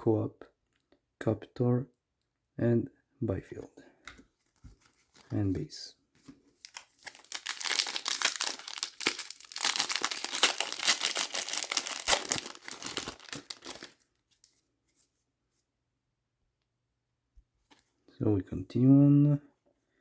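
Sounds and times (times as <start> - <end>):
card pack wrapper tearing and crinkling: 6.6 - 14.0.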